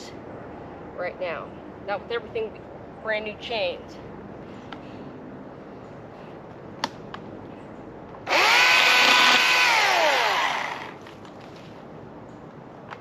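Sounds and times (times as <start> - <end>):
chainsaw revving: 8.3 - 11.0.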